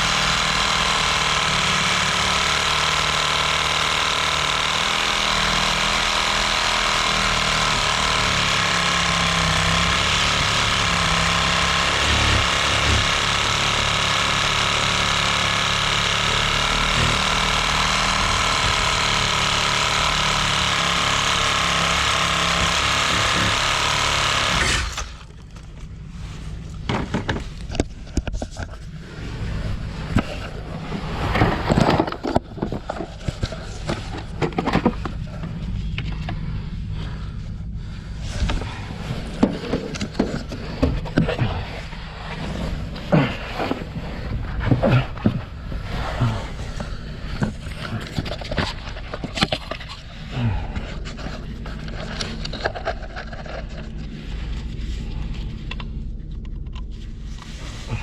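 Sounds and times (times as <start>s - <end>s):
power tool motor running: 0.0s - 25.7s
knocks and clatter: 26.8s - 28.9s, 31.2s - 36.4s.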